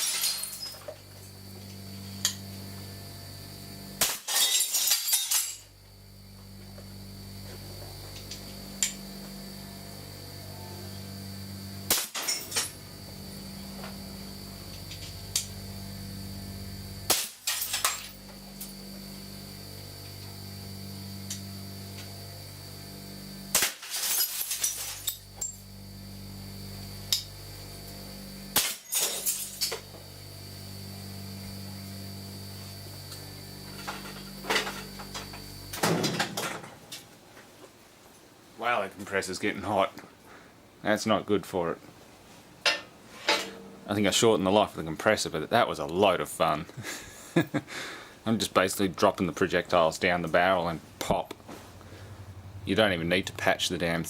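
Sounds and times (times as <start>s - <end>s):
glass breaking and tinkling: 0.0s - 1.0s, 4.0s - 5.7s, 11.9s - 12.8s, 17.1s - 18.2s, 23.5s - 25.6s, 28.6s - 29.8s
air compressor humming: 0.0s - 4.1s, 5.6s - 36.4s, 51.5s - 53.0s
air gun shots: 11.9s - 12.2s, 17.1s - 17.5s, 23.5s - 23.8s.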